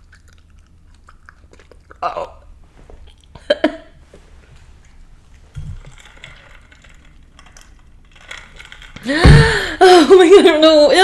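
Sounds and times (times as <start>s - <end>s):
chewing mouth clicks: 0.0s - 2.0s
dull low thump: 9.1s - 9.8s.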